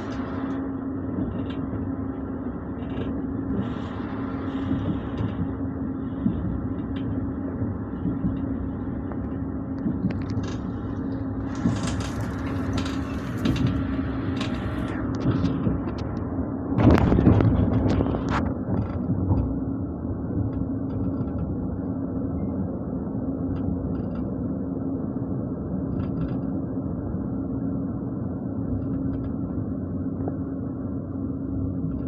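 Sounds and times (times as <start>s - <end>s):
vehicle rattling: 0.0s - 22.3s
vehicle rumble and hum: 0.0s - 32.0s.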